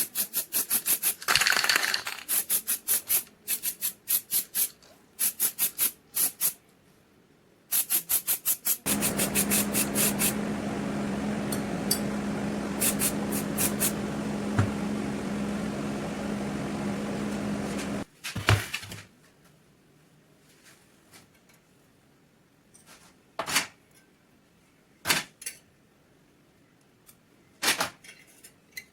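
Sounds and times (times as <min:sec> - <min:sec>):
quick scraping strokes: 0:07.8 - 0:10.4
small motor humming: 0:08.9 - 0:18.0.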